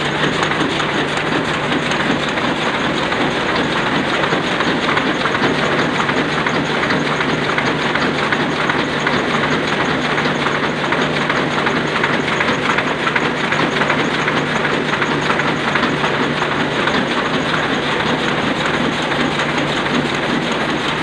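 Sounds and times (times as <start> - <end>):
printing press clattering: 0.0 - 21.0.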